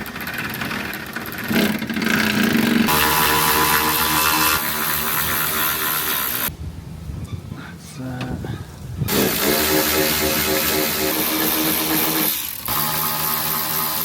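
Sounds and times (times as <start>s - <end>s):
motor running loudly: 0.0s - 6.5s, 9.1s - 14.0s.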